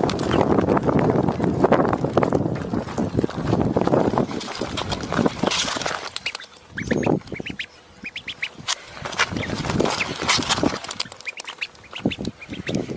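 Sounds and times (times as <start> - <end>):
birds chirping: 0.0 - 12.9
rough bird calls: 4.2 - 12.9.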